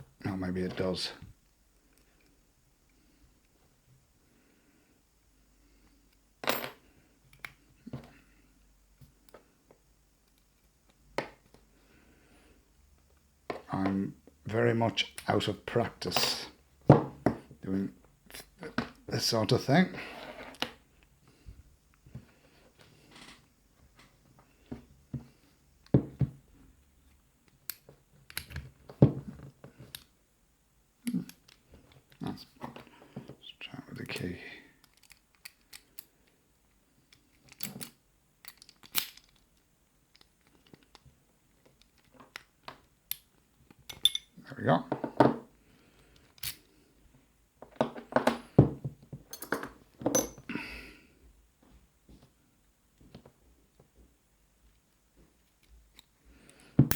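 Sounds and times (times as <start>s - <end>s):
padlock parts clinking: 34.0s - 36.1s, 37.1s - 41.0s, 41.6s - 44.4s, 46.2s - 46.7s, 49.3s - 50.5s
padlock clicking and knocking: 37.4s - 39.5s.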